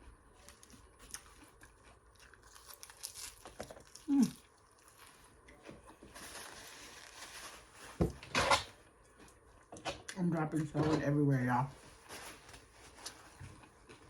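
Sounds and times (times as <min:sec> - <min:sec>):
chewing and crunching salad: 0:00.0 - 0:07.4, 0:12.0 - 0:14.0.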